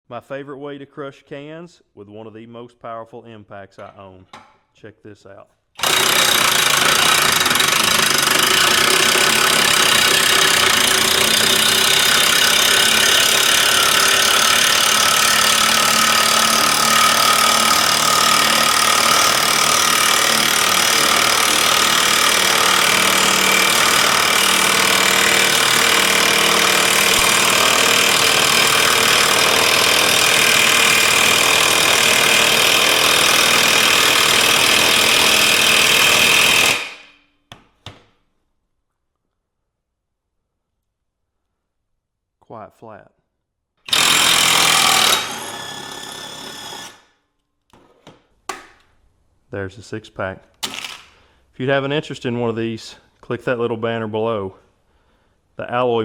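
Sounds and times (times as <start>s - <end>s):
impact wrench hammering: 5.8s - 38.1s, 43.9s - 47.0s, 50.6s - 51.1s.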